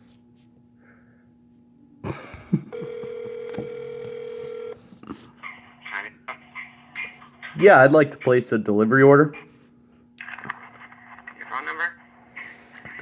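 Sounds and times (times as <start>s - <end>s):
telephone ringback tone: 2.7s - 4.8s
phone line click: 2.8s - 4.8s.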